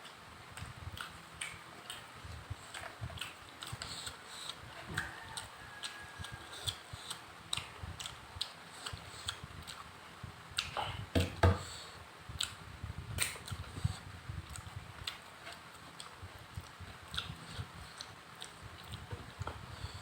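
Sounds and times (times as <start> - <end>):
mouth clicks and smacks: 0.0 - 2.1, 10.6 - 11.0, 13.2 - 13.9
wet chewing: 0.0 - 9.9, 13.2 - 20.0.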